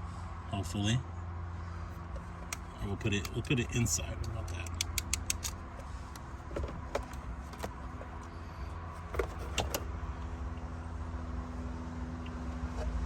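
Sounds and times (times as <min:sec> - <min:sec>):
hard objects clicking and knocking: 0:02.2 - 0:08.4, 0:09.0 - 0:10.0.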